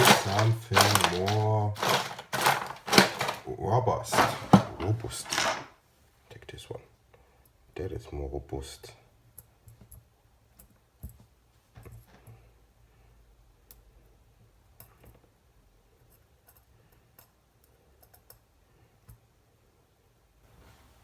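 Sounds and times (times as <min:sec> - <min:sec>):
clicks of small parts and tools: 0:00.0 - 0:03.4, 0:04.1 - 0:05.7.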